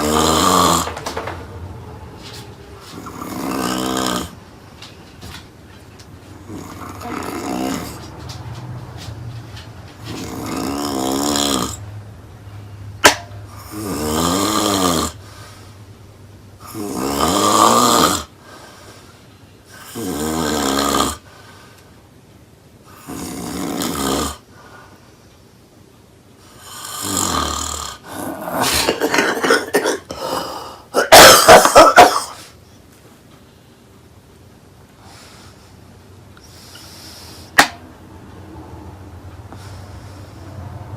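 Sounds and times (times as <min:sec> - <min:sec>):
person snoring loudly: 0:00.0 - 0:01.1, 0:02.9 - 0:04.4, 0:06.4 - 0:08.0, 0:10.0 - 0:11.8, 0:13.5 - 0:15.3, 0:16.6 - 0:18.3, 0:19.7 - 0:21.3, 0:22.9 - 0:24.4, 0:26.5 - 0:32.3.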